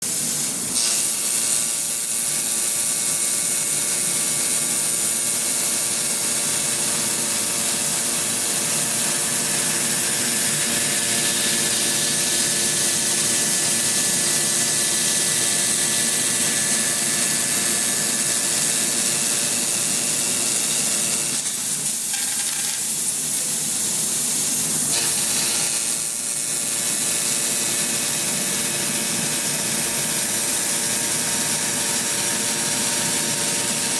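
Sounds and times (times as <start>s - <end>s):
laser cutting hiss and crackle: 0.1s - 6.4s, 13.4s - 29.4s.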